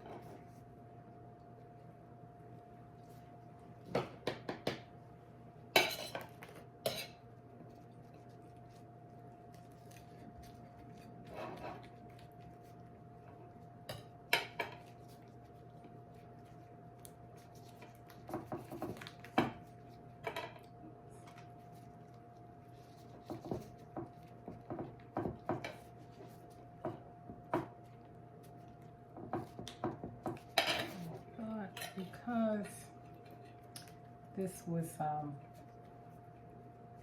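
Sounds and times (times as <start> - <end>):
cutlery and dishes clinking: 5.8 - 7.2.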